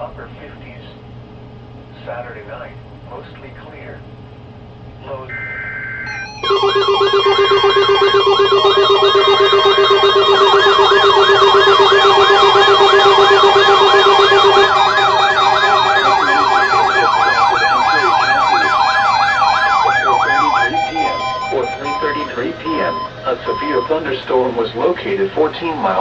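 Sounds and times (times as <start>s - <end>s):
steady buzzing tone: 5.3s - 24.0s
warbling electronic siren alert: 5.3s - 24.2s.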